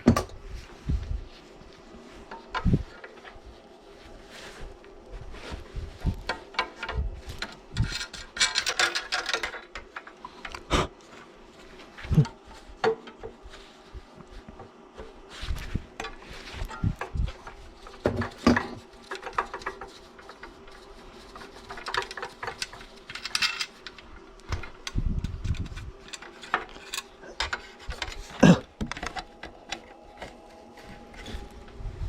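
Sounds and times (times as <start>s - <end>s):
tools and metal parts clattering: 5.4s - 13.7s, 15.0s - 31.7s.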